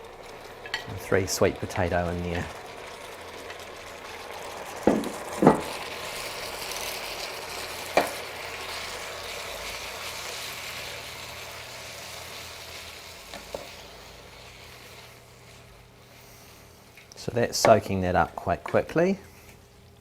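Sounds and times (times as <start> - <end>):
food sizzling in a pot: 0.0 - 20.0
utensil knocking against pot: 4.9 - 5.7.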